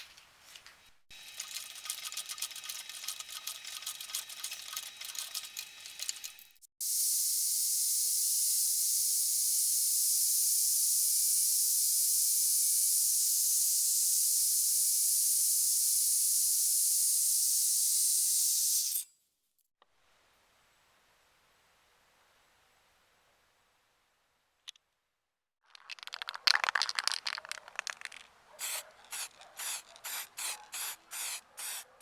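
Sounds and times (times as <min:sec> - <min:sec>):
spray paint hissing: 0:06.8 - 0:19.0, 0:27.4 - 0:32.0.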